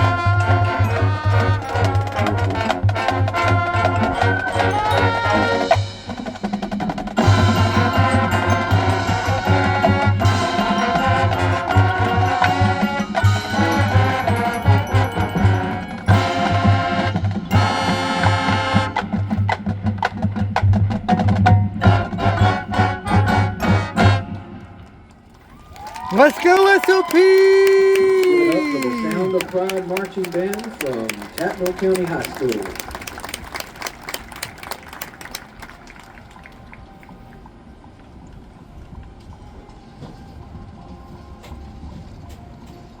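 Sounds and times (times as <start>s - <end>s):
sharp percussion hits: 0.0s - 19.5s
marching band playing: 0.0s - 37.3s
crowd applause: 10.3s - 16.2s, 25.3s - 37.4s.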